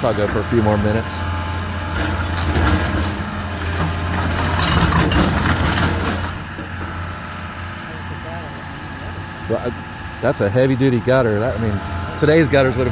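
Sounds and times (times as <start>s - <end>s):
demolition machine engine running: 0.0s - 12.9s.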